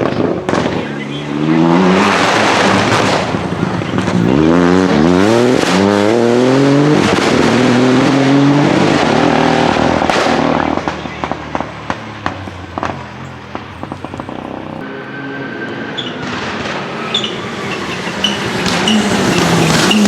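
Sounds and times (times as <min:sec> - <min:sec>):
exhaust pops and crackles: 0:00.0 - 0:05.9, 0:08.9 - 0:14.8, 0:16.0 - 0:20.0
rally car engine revving: 0:00.0 - 0:20.0.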